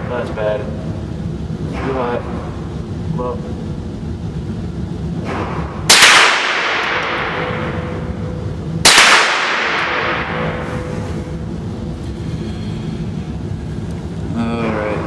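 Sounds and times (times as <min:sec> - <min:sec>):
rifle shots: 0:05.9 - 0:07.6, 0:08.8 - 0:10.4.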